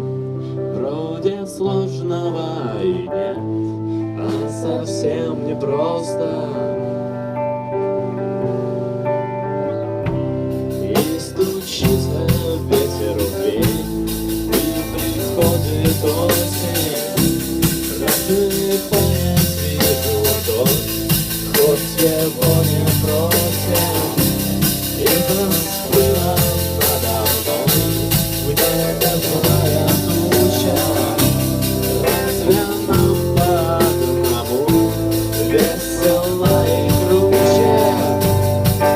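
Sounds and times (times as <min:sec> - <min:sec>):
punk rock band playing: 0:00.0 - 0:38.9
pitch-bending lead melody: 0:04.6 - 0:38.9
drum kit cymbal beat: 0:10.1 - 0:38.9.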